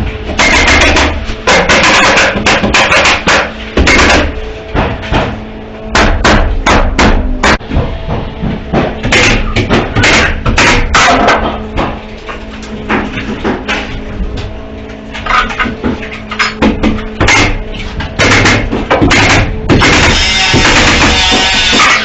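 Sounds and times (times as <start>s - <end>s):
nails hammered into wood: 5.9s - 7.6s, 8.8s - 11.5s, 18.2s - 22.0s.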